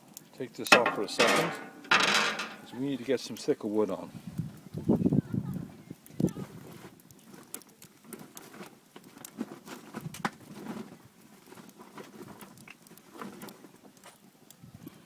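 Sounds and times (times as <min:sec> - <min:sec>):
wood fire crackling and popping: 0:05.8 - 0:15.0.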